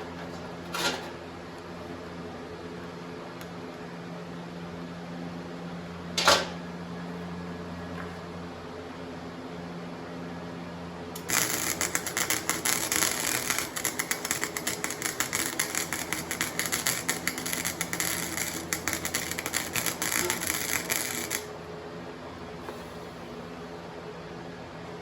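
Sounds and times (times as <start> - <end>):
welding arc crackling: 11.2 - 21.6
welder hum: 11.2 - 21.7.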